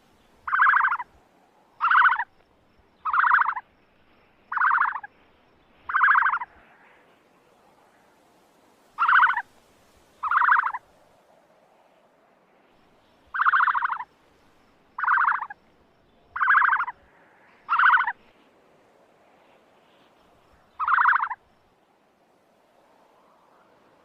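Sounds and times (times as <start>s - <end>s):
ostrich buzzy calls: 0.5s - 1.0s, 1.8s - 2.3s, 3.0s - 3.6s, 4.5s - 5.1s, 5.9s - 6.5s, 9.0s - 9.4s, 10.2s - 10.8s, 13.4s - 14.1s, 15.0s - 15.6s, 16.4s - 16.9s, 17.7s - 18.2s, 20.8s - 21.4s.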